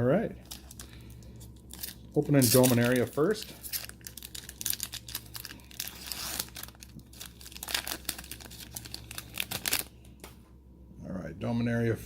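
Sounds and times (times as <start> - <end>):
foil wrapper tearing and crinkling: 0.4 - 9.9.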